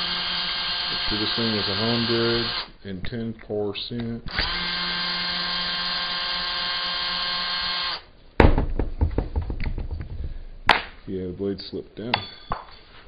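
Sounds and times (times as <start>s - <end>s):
power tool motor whine: 0.0s - 2.7s, 4.3s - 8.1s
sharp knock: 8.4s - 10.9s.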